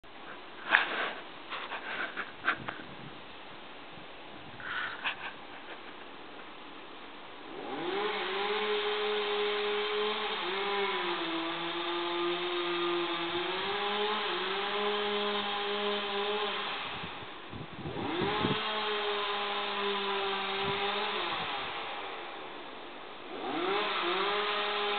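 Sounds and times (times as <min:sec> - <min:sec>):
chainsaw revving: 0:07.5 - 0:22.5, 0:23.2 - 0:24.9.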